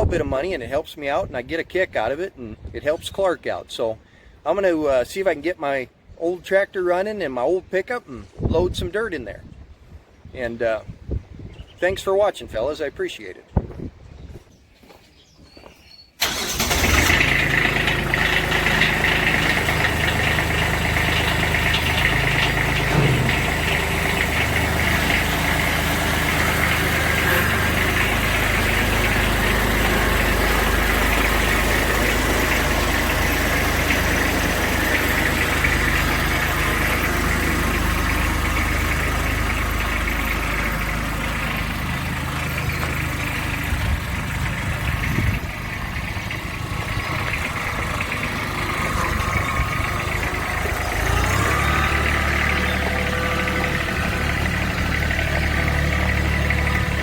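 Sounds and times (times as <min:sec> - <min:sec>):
engine idling: 0:16.2 - 0:57.0.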